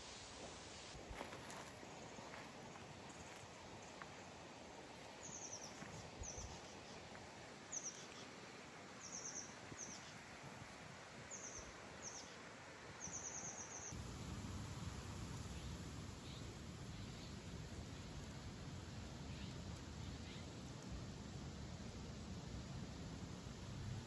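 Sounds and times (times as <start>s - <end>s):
outdoor background hiss: 0.0s - 24.0s.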